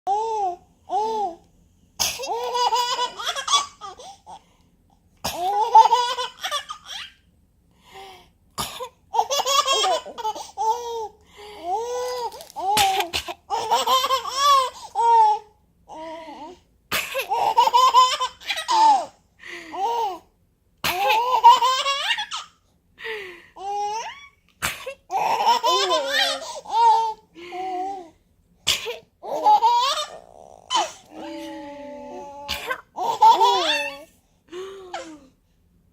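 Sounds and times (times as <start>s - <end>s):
baby laughing: 2.2s - 4.3s, 5.3s - 7.2s, 9.1s - 11.1s, 11.7s - 15.4s, 17.1s - 19.2s, 20.8s - 22.6s, 23.6s - 27.2s, 28.7s - 31.3s, 32.2s - 34.1s
baby sneezing: 28.7s - 29.0s.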